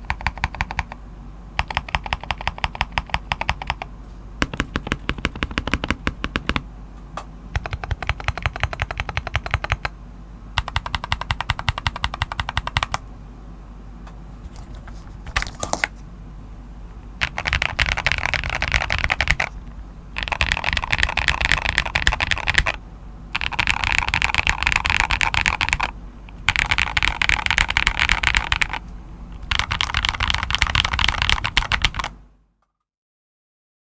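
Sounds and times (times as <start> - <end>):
fast typing on mechanical keyboard: 0.0 - 1.0, 1.6 - 6.6, 7.5 - 9.9, 10.6 - 13.0, 17.2 - 19.6, 20.2 - 22.8, 23.4 - 28.8, 29.4 - 32.2.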